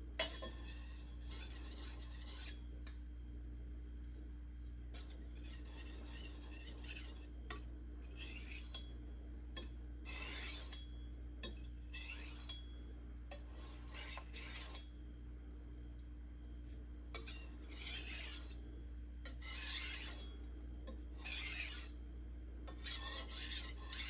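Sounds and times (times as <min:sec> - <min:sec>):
knife scraping on whetstone: 0:00.2 - 0:02.6, 0:05.0 - 0:07.3, 0:08.1 - 0:08.9, 0:10.1 - 0:10.9, 0:11.9 - 0:12.7, 0:13.3 - 0:14.9, 0:17.1 - 0:18.6, 0:19.2 - 0:20.3, 0:21.2 - 0:22.0, 0:22.7 - 0:24.0.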